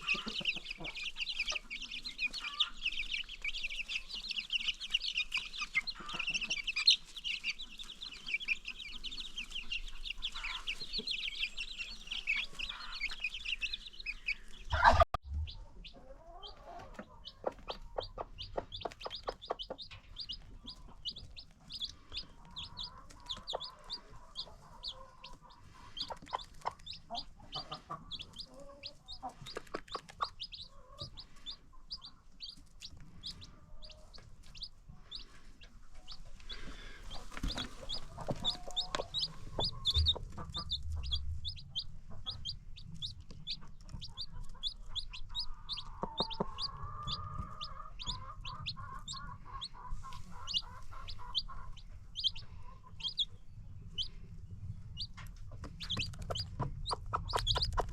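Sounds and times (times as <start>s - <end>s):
baby chicks peeping: 0.0s - 57.9s
hen clucking: 0.0s - 57.9s.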